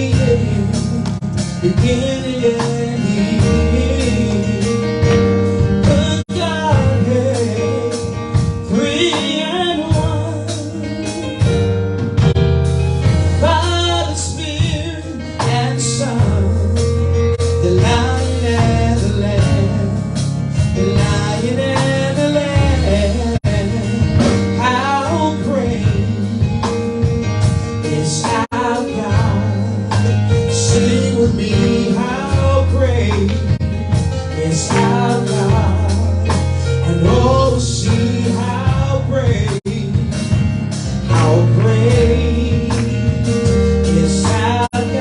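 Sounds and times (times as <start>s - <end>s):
band backing track: 0.0s - 45.0s
bass notes: 0.0s - 45.0s
guitar: 0.0s - 45.0s
voices singing gospel song: 27.8s - 40.2s, 41.0s - 45.0s.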